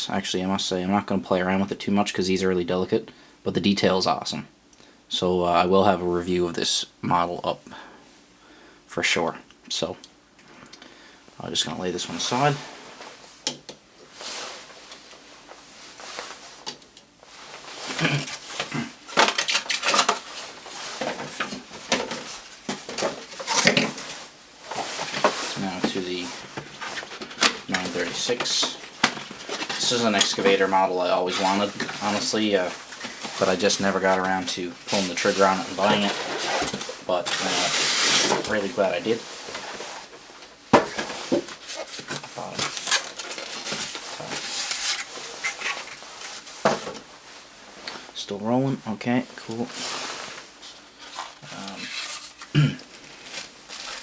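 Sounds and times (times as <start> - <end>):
packaging rustling: 14.1 - 47.9, 49.4 - 54.0.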